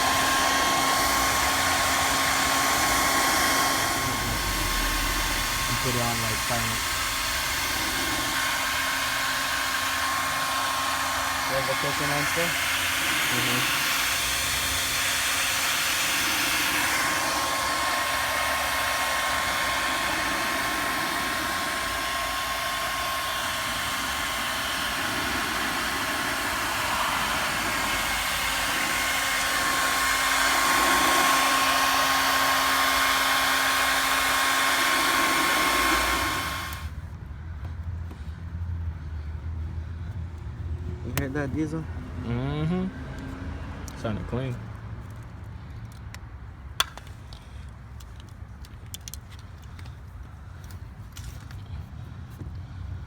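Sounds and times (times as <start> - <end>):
hot-air blower running: 0.0 - 37.1.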